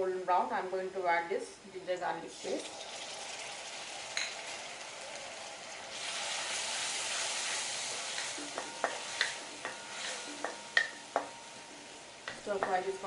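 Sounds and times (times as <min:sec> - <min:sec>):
onions sizzling in hot oil: 0:02.3 - 0:13.0
spoon scraping a pan: 0:05.9 - 0:11.6.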